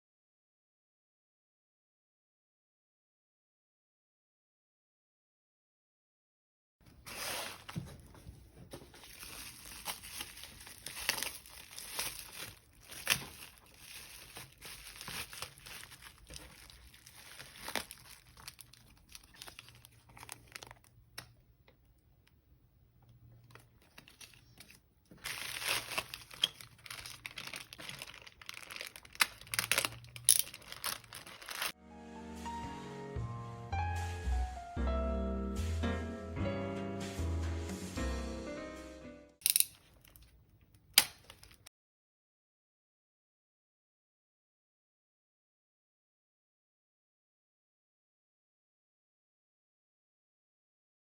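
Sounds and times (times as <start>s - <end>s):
packaging crinkling and tearing: 6.9s - 21.3s, 23.4s - 31.8s, 39.4s - 41.7s.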